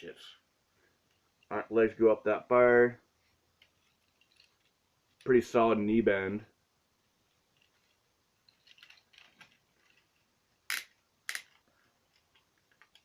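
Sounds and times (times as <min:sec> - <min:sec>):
action figure joints clicking: 0:08.4 - 0:13.0.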